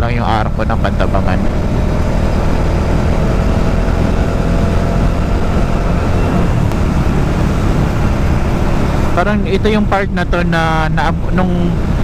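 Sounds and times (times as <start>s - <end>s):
motorcycle engine cruising: 0.0s - 12.0s
wind rumble on microphone: 0.0s - 12.0s.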